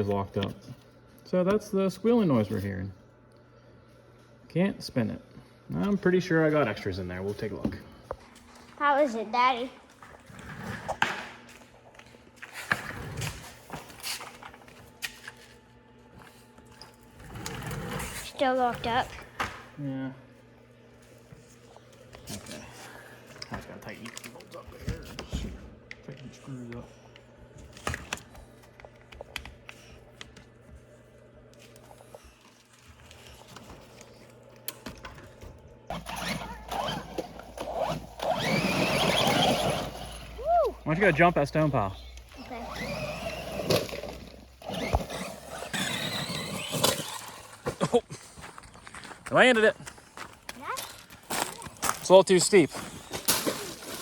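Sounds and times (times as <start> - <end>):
low steady hum: 13.5 - 45.6.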